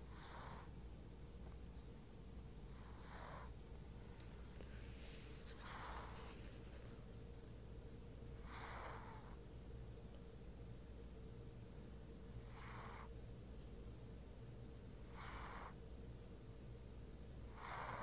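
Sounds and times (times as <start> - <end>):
cat snoring: 0.0 - 0.8, 2.7 - 3.5, 8.4 - 9.4, 12.4 - 13.1, 15.0 - 15.8, 17.5 - 18.0.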